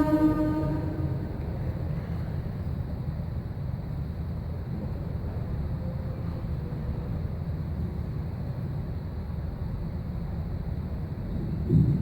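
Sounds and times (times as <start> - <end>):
faint thin tone: 0.0 - 1.7
low rumbling background noise: 0.0 - 12.0.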